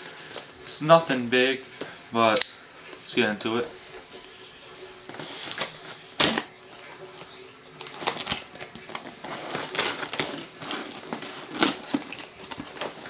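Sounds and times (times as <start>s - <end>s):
cardboard box packaging rustling: 5.1s - 13.0s.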